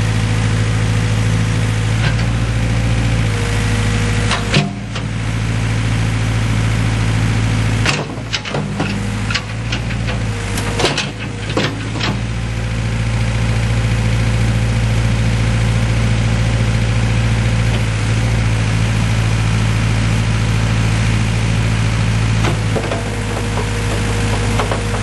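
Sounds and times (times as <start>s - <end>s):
diesel engine running: 0.0s - 25.0s
sharp knocks: 22.4s - 25.0s.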